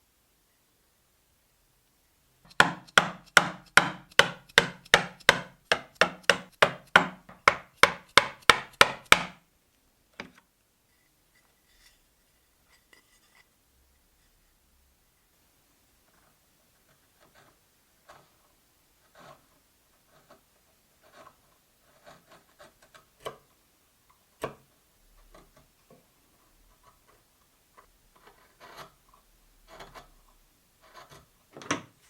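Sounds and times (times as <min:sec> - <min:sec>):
hand tool working wood: 0:02.5 - 0:09.4.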